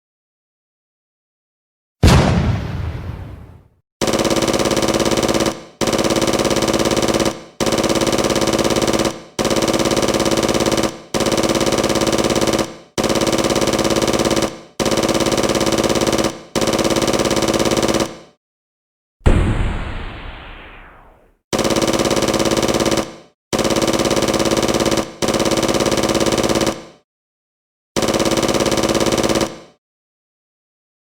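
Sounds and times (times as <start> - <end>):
machine-gun bursts: 4.0 - 18.3, 21.6 - 27.0, 28.0 - 29.8.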